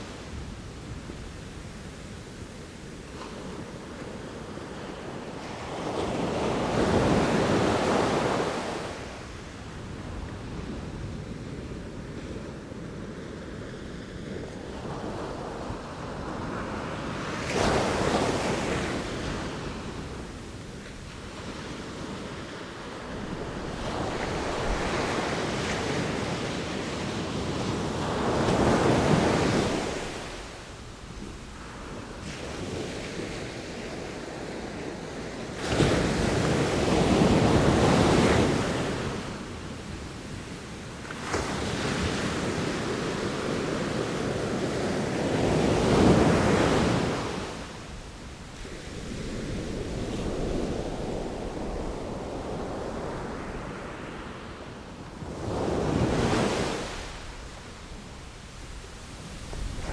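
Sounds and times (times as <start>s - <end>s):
wind: 0.0s - 59.9s.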